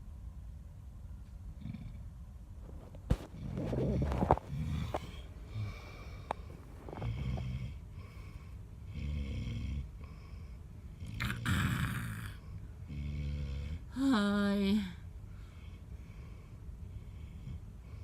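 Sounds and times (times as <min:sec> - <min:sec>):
woman snoring: 0:03.4 - 0:08.1, 0:11.0 - 0:14.9.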